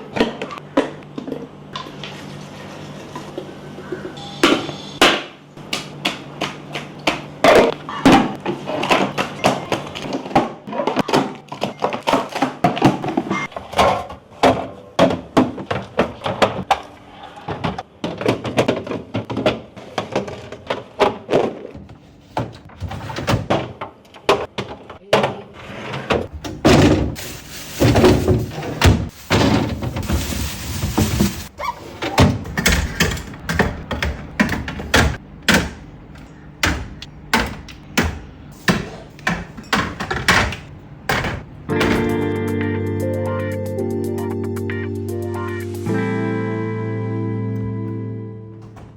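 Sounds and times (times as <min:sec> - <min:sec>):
plastic containers clunking in fridge: 0:26.1 - 0:31.4, 0:32.1 - 0:35.9.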